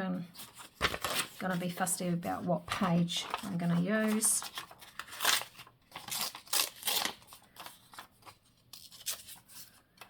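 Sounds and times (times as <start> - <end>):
paper handling: 0.3 - 2.0, 2.6 - 10.0
scissors snipping paper: 2.8 - 7.4.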